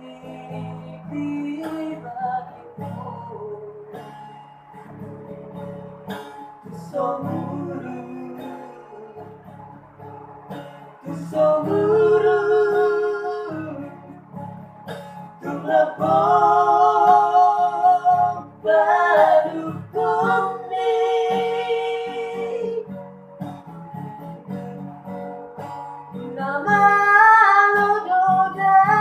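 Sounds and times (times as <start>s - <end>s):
person singing: 0.0s - 4.1s, 6.7s - 9.4s, 11.0s - 14.1s, 15.4s - 22.9s, 26.3s - 29.0s
strummed acoustic guitar: 0.0s - 29.0s.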